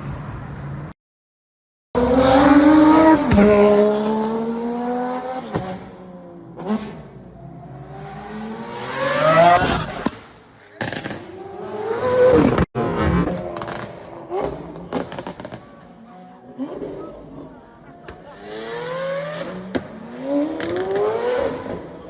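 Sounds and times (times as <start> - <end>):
car engine revving hard: 2.0 - 5.9, 7.8 - 10.0.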